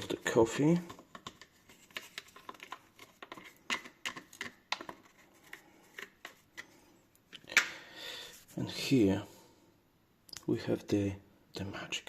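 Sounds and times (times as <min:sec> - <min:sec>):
small clicks and scrapes: 0:00.8 - 0:07.4.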